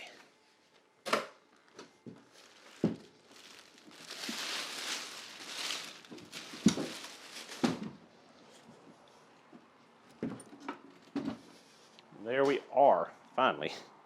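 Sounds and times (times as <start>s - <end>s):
plastic rustling and crinkling: 1.5s - 9.1s.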